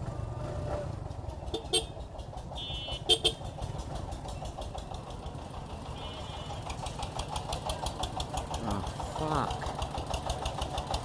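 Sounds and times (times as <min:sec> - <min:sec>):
motorcycle engine running: 0:00.0 - 0:11.0
horn toots: 0:02.6 - 0:03.4.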